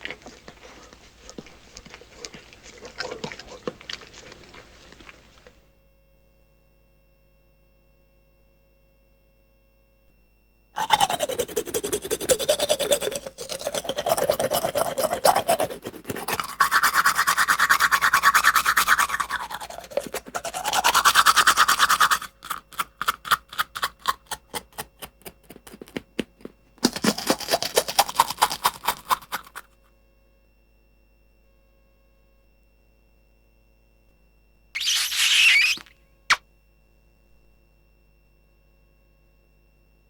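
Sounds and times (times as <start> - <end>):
toothbrush scrubbing teeth: 0.0 - 5.6, 10.8 - 29.7.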